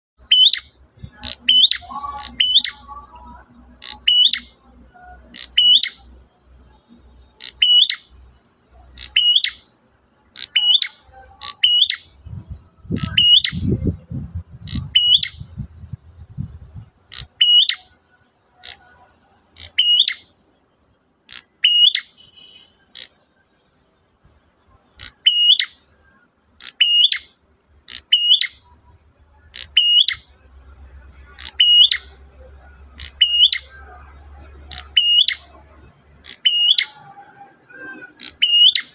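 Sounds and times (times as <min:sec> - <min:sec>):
songbird chirping: 0:00.2 - 0:38.9
low rumble: 0:12.1 - 0:17.1.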